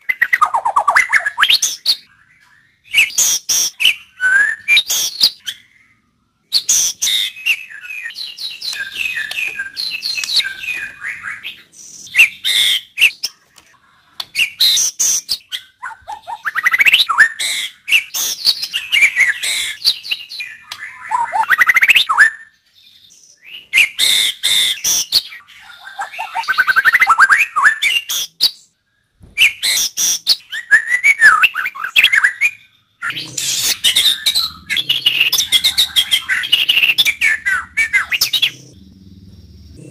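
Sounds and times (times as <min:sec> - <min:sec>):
bird singing whistles and clicks: 0:06.6 - 0:22.5, 0:26.0 - 0:38.8.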